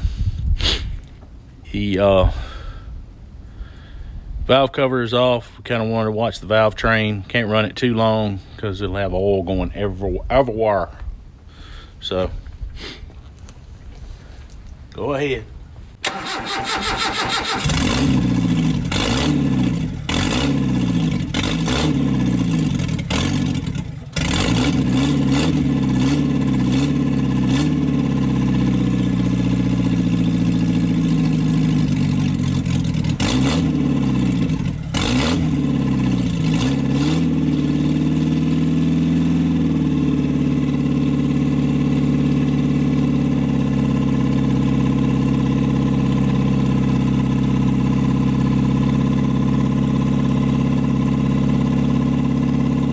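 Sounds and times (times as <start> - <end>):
car engine revving: 16.0 - 52.9.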